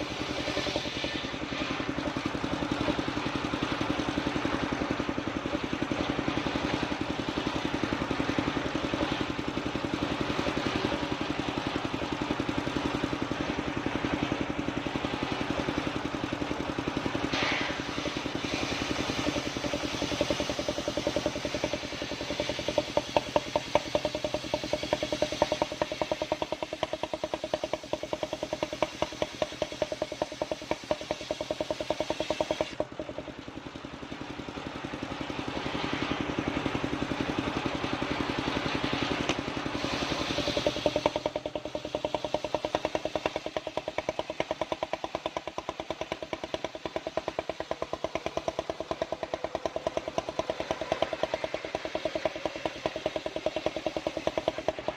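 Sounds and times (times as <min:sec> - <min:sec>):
sawmill engine running: 0:00.0 - 0:54.9
saw hissing: 0:17.2 - 0:32.8, 0:39.1 - 0:54.9.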